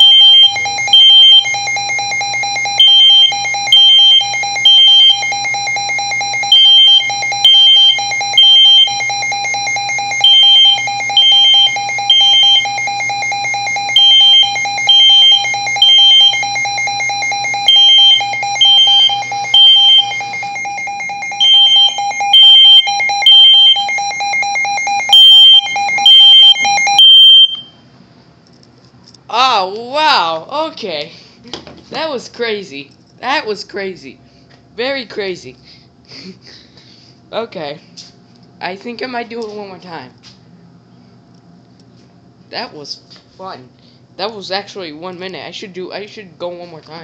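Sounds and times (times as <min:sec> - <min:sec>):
smoke alarm beeps: 0:00.0 - 0:27.9.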